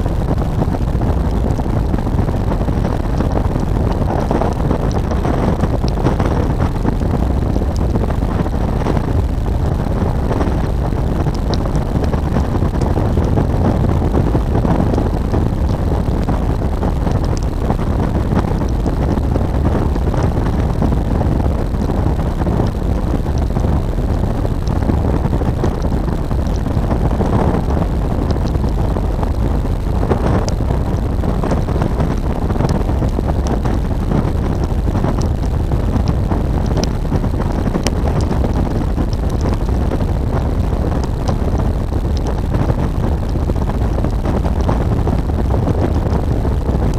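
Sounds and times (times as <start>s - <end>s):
wind on microphone: 0.0s - 46.9s.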